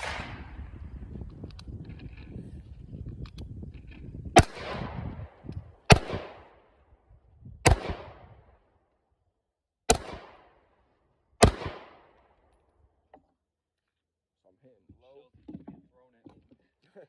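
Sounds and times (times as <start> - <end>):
pistol shots echoing: 0.0 - 0.8, 4.4 - 5.1, 5.9 - 6.6, 7.6 - 8.3, 9.9 - 10.6, 11.4 - 12.2.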